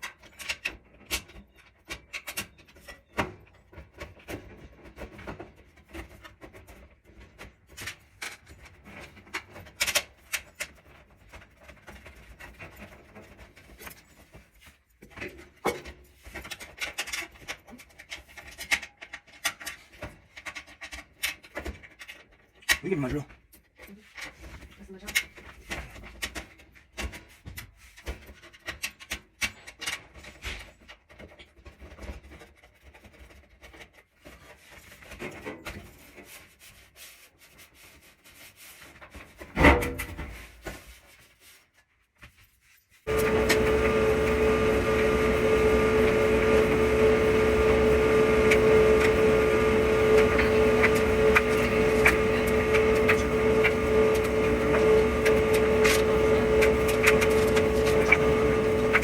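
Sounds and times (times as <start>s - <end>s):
clothes dryer humming: 43.1s - 59.0s.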